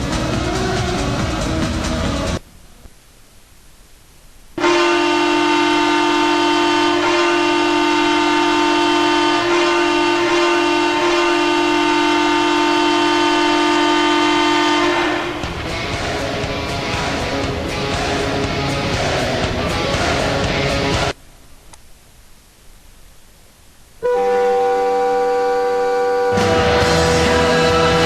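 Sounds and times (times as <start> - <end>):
air horn blast: 4.6 - 15.6, 24.0 - 28.0.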